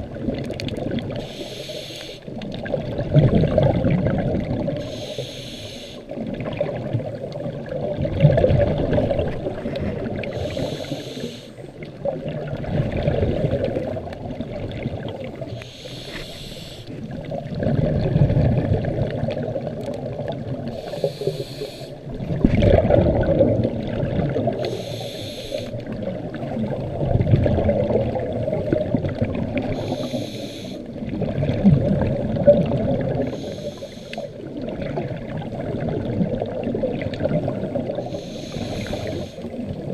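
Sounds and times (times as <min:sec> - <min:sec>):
bubbles gurgling: 0:00.0 - 0:01.3, 0:02.3 - 0:04.9, 0:06.1 - 0:15.7, 0:16.4 - 0:30.2, 0:30.8 - 0:33.6, 0:34.4 - 0:39.9
regulator inhale hiss: 0:01.1 - 0:02.3, 0:04.8 - 0:06.1, 0:09.8 - 0:11.7, 0:15.5 - 0:17.0, 0:20.7 - 0:22.0, 0:24.6 - 0:25.9, 0:29.6 - 0:30.9, 0:33.2 - 0:34.5, 0:38.0 - 0:39.7.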